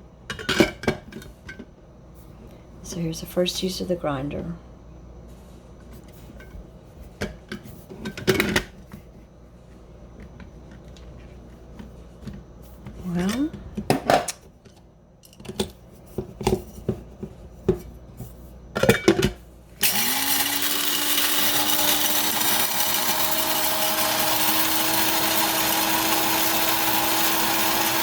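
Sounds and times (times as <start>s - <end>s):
coffee grinder grinding beans: 19.8s - 28.0s.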